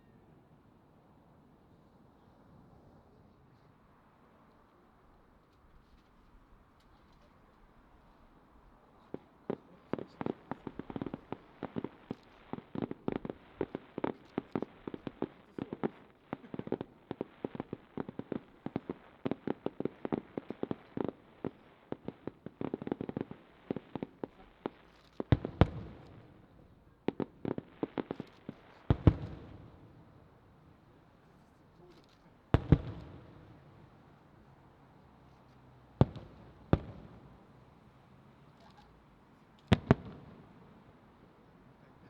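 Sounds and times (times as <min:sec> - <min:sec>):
fireworks bursting: 0:09.0 - 0:42.0
heavy fireworks booms: 0:09.2 - 0:31.0, 0:32.5 - 0:34.5, 0:36.0 - 0:37.7, 0:39.7 - 0:40.9.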